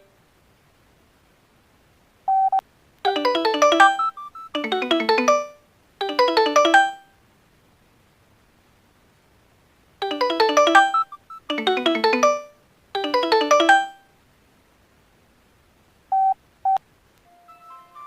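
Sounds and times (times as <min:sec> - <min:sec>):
bright chiming notes: 0:03.1 - 0:07.0, 0:10.0 - 0:14.0
synthesized phone ringtone: 0:03.1 - 0:07.1, 0:10.0 - 0:14.0.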